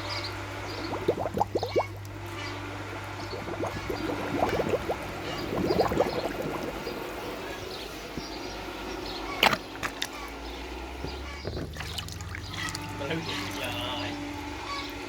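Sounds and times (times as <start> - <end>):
water gurgling and splashing: 0.0 - 13.8
steady low hum: 0.0 - 15.0.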